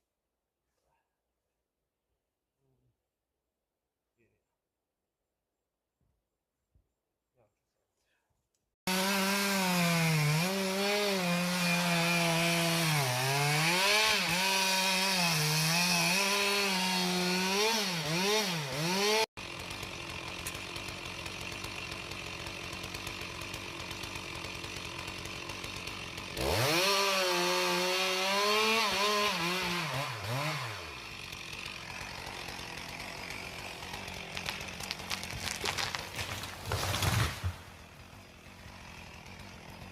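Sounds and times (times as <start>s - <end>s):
chainsaw cutting wood: 8.8s - 39.9s
chainsaw idling and revving: 8.8s - 39.9s.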